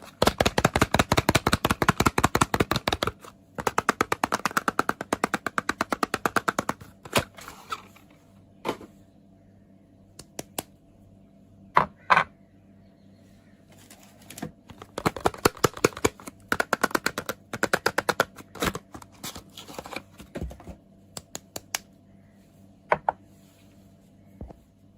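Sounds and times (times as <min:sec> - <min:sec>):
soap packaging crackling: 0:14.7 - 0:20.2.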